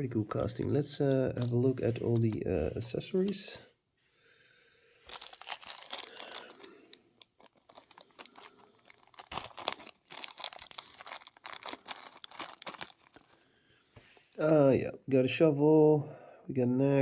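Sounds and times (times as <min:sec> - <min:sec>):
plastic packaging crackling: 0:00.3 - 0:03.5, 0:05.1 - 0:13.6.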